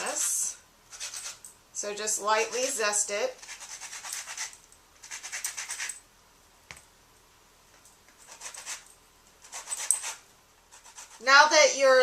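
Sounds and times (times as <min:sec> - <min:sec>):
zester rasping on lemon peel: 0:00.0 - 0:01.4, 0:02.6 - 0:05.9, 0:09.4 - 0:11.3.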